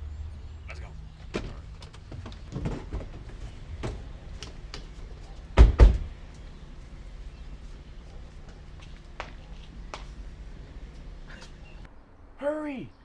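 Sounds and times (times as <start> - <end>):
door clicks and knocks: 2.2 - 11.9
heavy door slams: 2.5 - 11.9.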